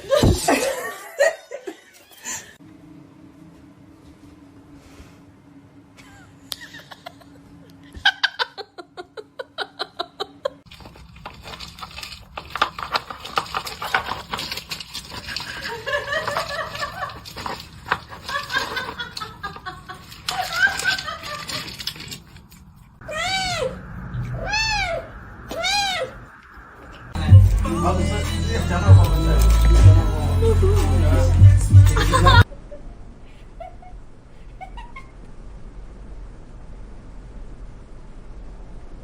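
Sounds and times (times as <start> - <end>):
people laughing: 0.0 - 2.4, 6.0 - 10.6, 15.5 - 21.8, 28.0 - 32.8
clattering: 10.7 - 22.8.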